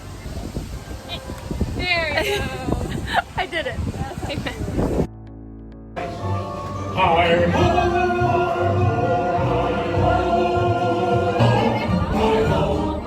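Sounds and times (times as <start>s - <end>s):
choir singing long held notes: 6.0s - 13.0s.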